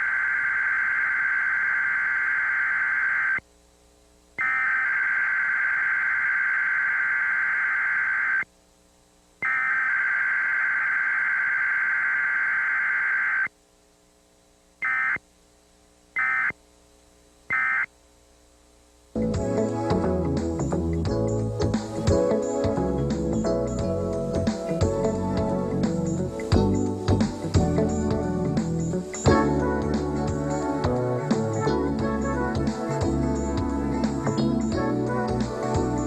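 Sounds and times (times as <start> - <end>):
short data tone bursts: 0.0 - 3.4, 4.4 - 8.4, 9.4 - 13.5, 14.8 - 15.2, 16.2 - 16.6, 17.5 - 17.9
warbling digital data tones: 0.0 - 3.4, 4.4 - 8.4, 9.4 - 13.5.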